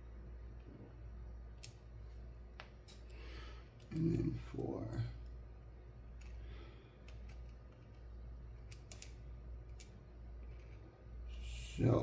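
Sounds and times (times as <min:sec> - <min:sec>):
low steady hum: 0:00.0 - 0:12.0
faint small clicks and ticks: 0:01.5 - 0:01.8, 0:06.2 - 0:10.9.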